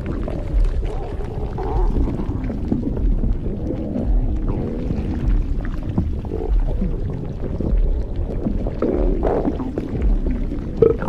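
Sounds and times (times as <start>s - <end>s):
stomach gurgling and rumbling: 0.0s - 11.0s.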